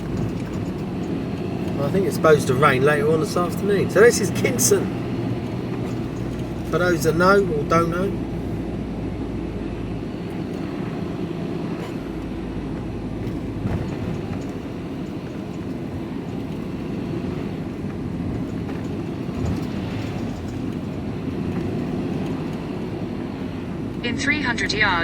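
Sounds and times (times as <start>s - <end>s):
vehicle engine and road noise: 0.0s - 25.0s.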